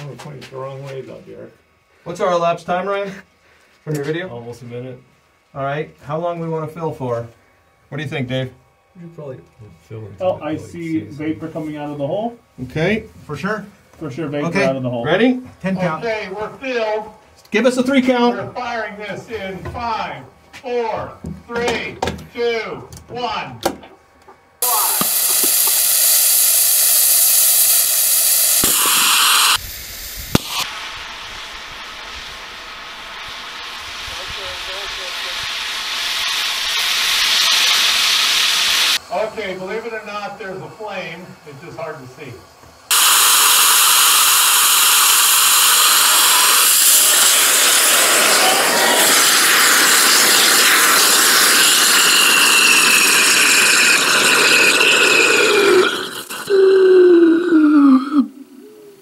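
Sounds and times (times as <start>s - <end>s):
rocket motor hissing: 24.6s - 58.5s
sharp crack: 30.3s - 30.9s.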